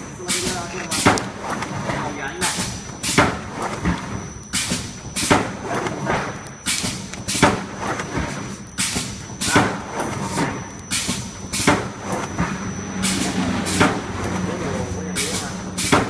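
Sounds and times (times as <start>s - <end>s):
motor hum: 0.0s - 16.0s
machine mechanical knocks: 0.2s - 16.0s
faint high whine: 3.8s - 16.0s.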